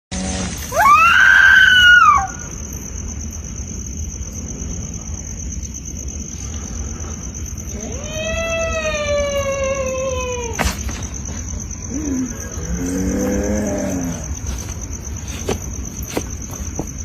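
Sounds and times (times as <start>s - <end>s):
long wailing cry: 7.7s - 10.6s.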